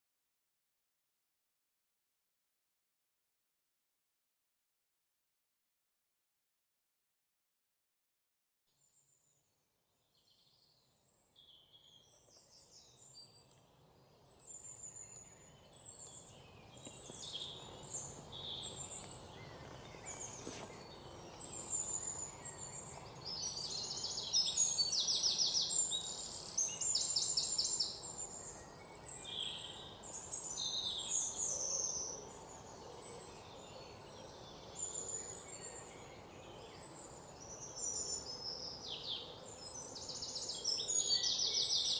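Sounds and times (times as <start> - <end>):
outdoor background hiss: 10.0 - 41.9.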